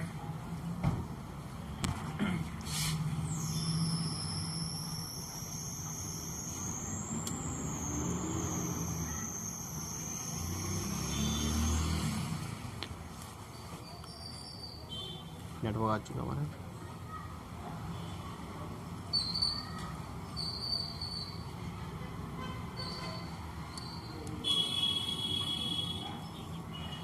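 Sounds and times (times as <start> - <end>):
background traffic noise: 0.0 - 27.0
vehicle rumbling past: 6.8 - 9.3, 9.9 - 12.8.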